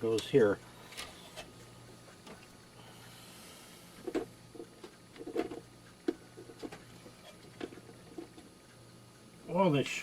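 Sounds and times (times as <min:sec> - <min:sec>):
faint steady hum: 0:00.0 - 0:10.0.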